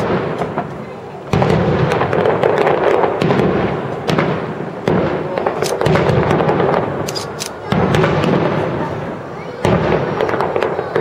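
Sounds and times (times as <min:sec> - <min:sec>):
fireworks booming: 0:00.0 - 0:11.0
fireworks crackling: 0:00.0 - 0:11.0.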